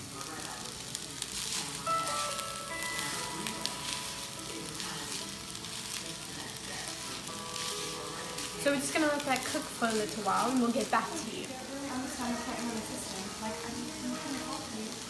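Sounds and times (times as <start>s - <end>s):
food sizzling in a pan: 0.0s - 15.0s.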